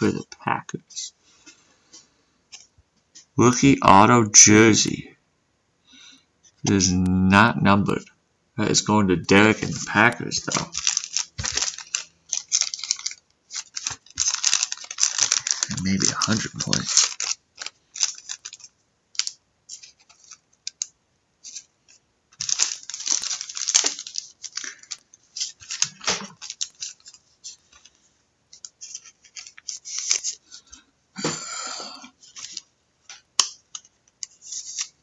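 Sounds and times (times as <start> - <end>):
trading cards and packaging rustling: 8.6 - 30.9, 32.1 - 35.0.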